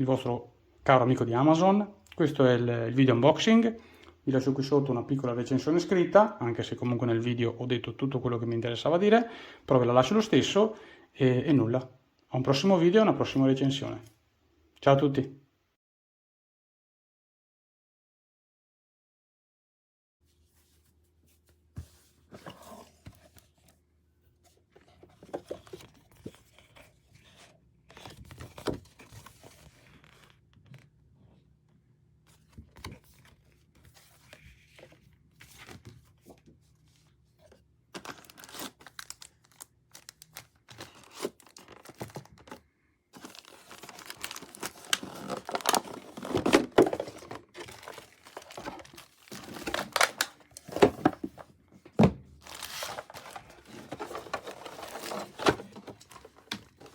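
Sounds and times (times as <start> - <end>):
packaging crinkling and tearing: 38.0 - 42.6, 43.2 - 51.2, 52.4 - 56.9.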